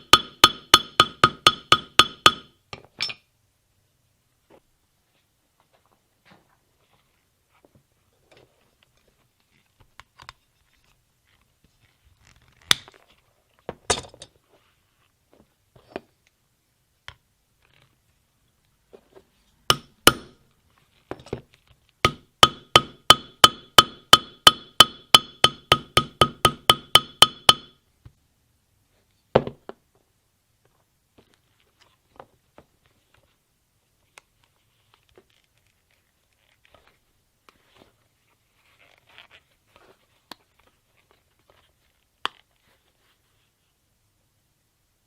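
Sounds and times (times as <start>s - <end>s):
hammer tapping on metal: 0.0s - 2.5s, 19.7s - 20.4s, 22.1s - 27.8s.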